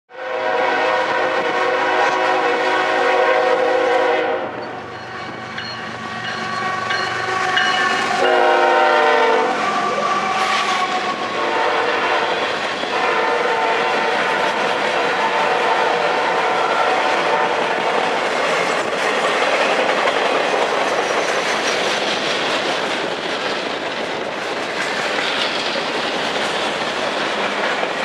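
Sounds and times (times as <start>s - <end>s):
locomotive air horn: 0.1s - 4.6s, 6.5s - 18.0s
train running noise: 0.2s - 28.0s.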